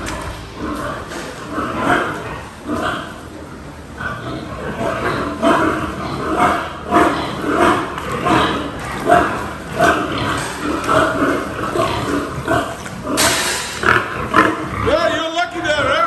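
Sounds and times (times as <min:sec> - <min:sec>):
brief rushing noise: 0:00.0 - 0:02.7
pigs screaming: 0:04.0 - 0:16.0.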